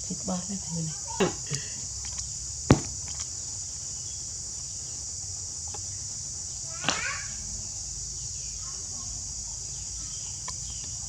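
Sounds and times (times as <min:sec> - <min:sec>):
insects droning: 0:00.0 - 0:11.0
sharp knock: 0:02.7 - 0:03.2.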